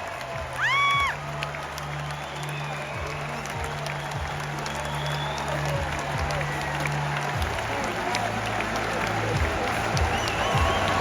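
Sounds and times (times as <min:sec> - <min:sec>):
crowd applauding: 0:00.0 - 0:11.0
music over public-address system: 0:00.0 - 0:11.0.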